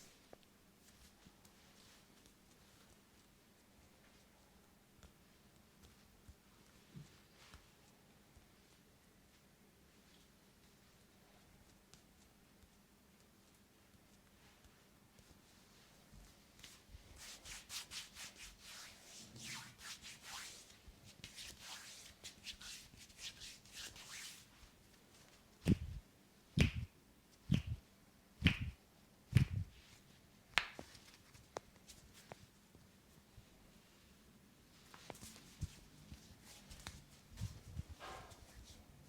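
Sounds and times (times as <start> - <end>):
hands rubbing head: 16.6 - 24.6, 25.6 - 26.0, 26.6 - 26.9, 27.5 - 27.8, 28.4 - 30.0
sharp hand slaps: 25.6 - 26.0, 26.6 - 26.9, 27.5 - 27.8, 28.4 - 29.7, 30.5 - 30.9.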